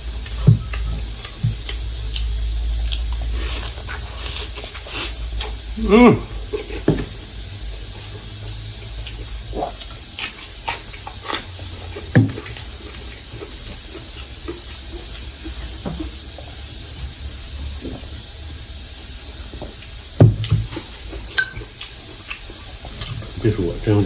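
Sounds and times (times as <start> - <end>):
person chewing: 0.0 - 16.8, 19.2 - 23.4
low steady hum and hiss: 0.0 - 24.0.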